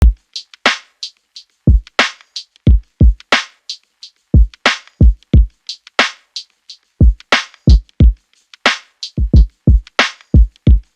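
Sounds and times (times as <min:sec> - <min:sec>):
electronic drum machine beat: 0:00.0 - 0:03.8, 0:04.4 - 0:06.2, 0:07.0 - 0:10.9.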